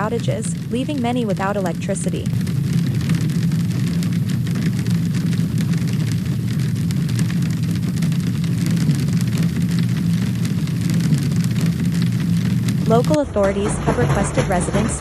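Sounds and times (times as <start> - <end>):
heavy rain and hail pelting: 0.0 - 15.0
low rumble: 0.0 - 15.0.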